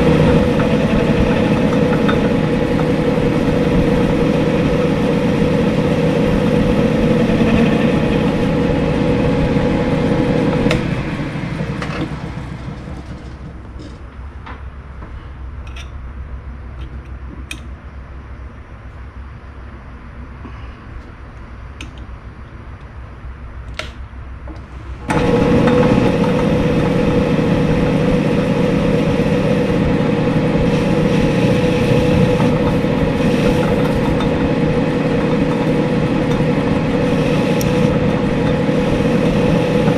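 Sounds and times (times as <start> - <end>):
lathe motor humming: 0.0 - 13.8, 25.0 - 39.9.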